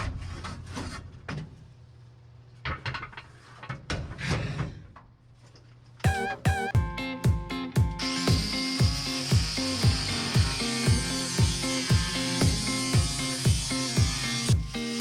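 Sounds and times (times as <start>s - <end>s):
music with pitched notes: 6.1s - 15.0s.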